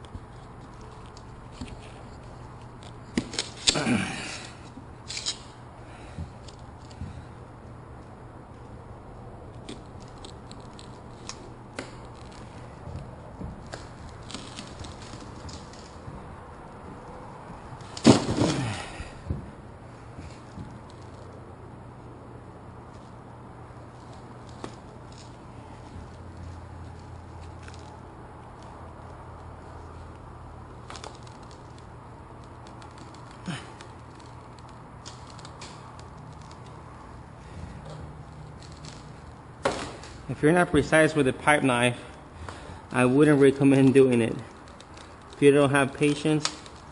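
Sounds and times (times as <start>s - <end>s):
blade clicks and scrapes: 5.0s - 5.5s.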